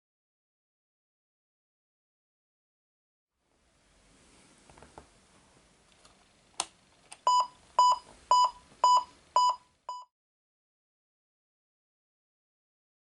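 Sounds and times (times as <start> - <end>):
short electronic beeps: 7.3 - 10.1.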